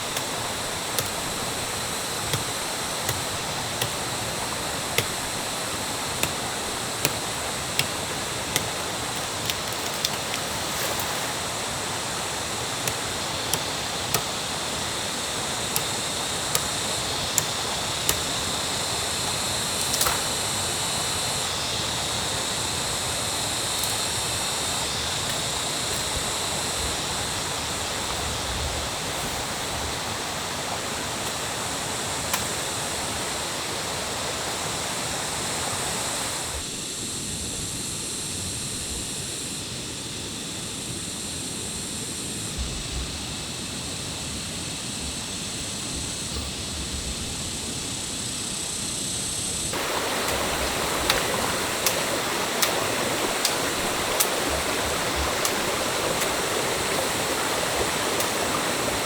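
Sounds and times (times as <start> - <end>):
stream water rushing: 0.0 - 36.6, 49.7 - 59.0.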